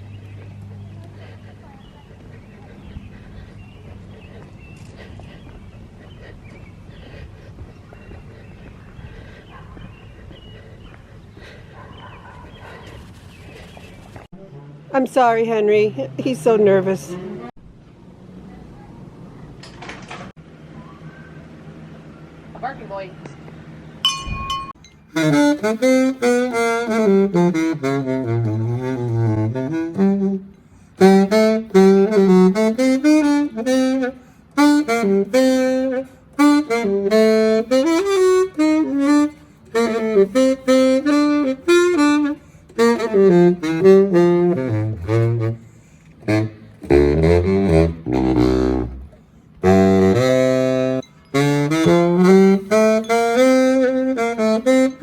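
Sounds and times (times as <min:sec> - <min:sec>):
solo saxophone melody: 0:25.1 - 0:55.0.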